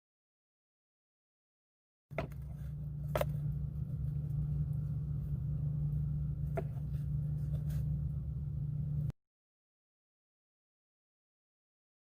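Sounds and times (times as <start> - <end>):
low mechanical rumble: 2.1 - 9.2.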